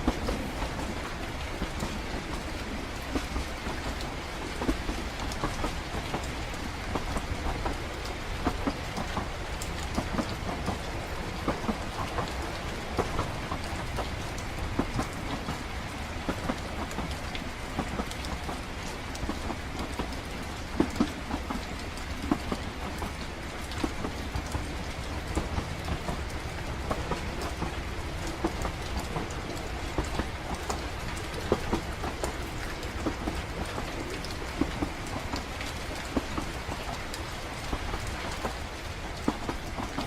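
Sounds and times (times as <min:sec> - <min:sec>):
moving train rumble: 0:00.0 - 0:40.0
steady rain: 0:00.0 - 0:40.0.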